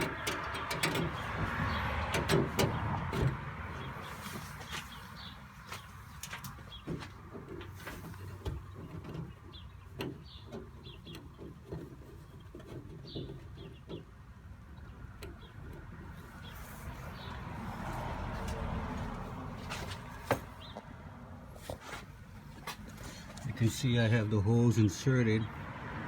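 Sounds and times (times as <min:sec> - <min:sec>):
clicks taps and scrapes of wire: 0:00.0 - 0:05.0, 0:05.7 - 0:14.2.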